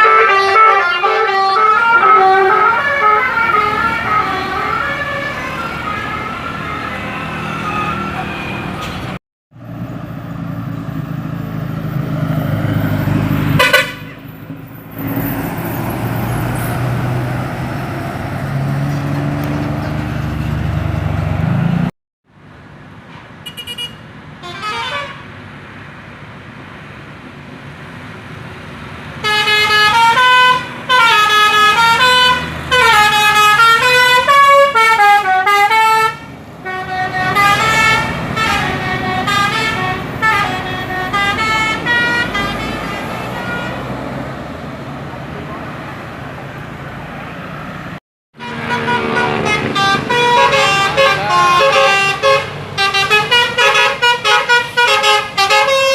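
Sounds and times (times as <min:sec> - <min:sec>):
multi-tone bus horn tune: 0:00.0 - 0:09.2, 0:13.5 - 0:14.4, 0:23.4 - 0:25.3, 0:29.2 - 0:44.2, 0:48.4 - 0:55.9
sliding horn tones: 0:29.2 - 0:44.0, 0:48.4 - 0:55.9.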